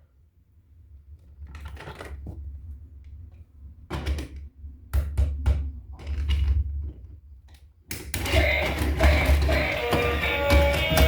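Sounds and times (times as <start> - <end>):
plastic toys clicking and knocking: 3.9 - 11.0.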